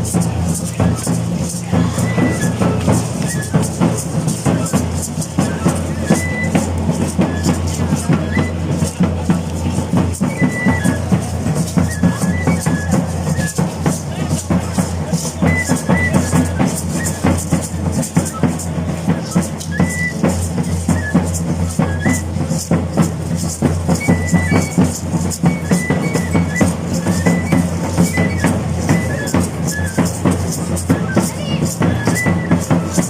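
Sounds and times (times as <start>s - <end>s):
cane flute playing: 0.0s - 33.0s
drum beating: 0.0s - 33.0s.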